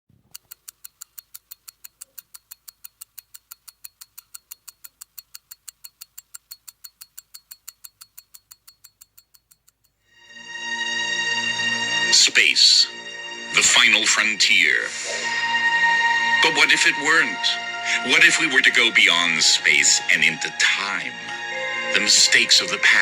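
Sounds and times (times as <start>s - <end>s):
mechanical watch ticking: 0.2s - 10.0s
musical swell: 10.1s - 23.0s.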